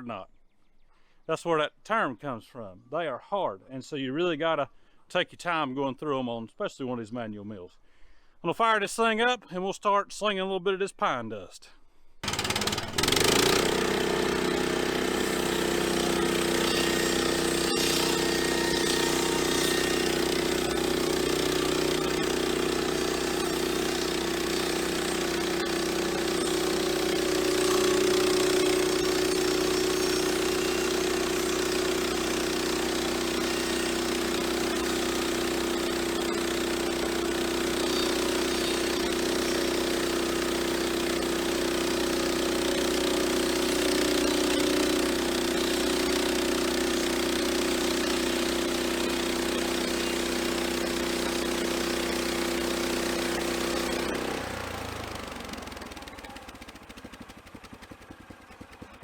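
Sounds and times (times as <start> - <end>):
band saw blade cutting wood: 12.2 - 55.8
gasoline engine running: 12.2 - 59.0.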